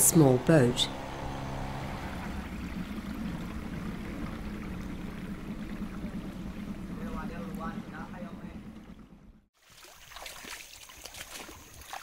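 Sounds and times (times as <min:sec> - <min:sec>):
low hum: 0:00.0 - 0:09.5
water splashing around boat: 0:00.0 - 0:12.0.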